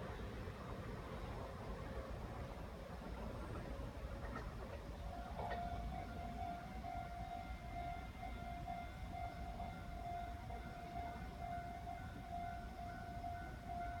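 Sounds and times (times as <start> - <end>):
level crossing warning bell: 5.2 - 14.0.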